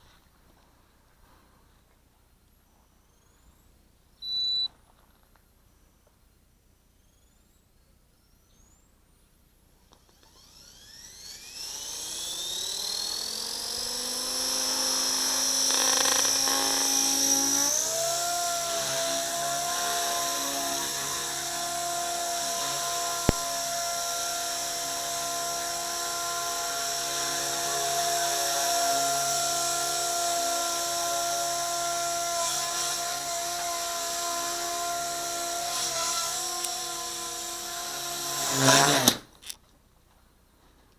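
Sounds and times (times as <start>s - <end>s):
model helicopter motor whine: 10.0s - 39.2s
sharp click: 23.2s - 23.5s.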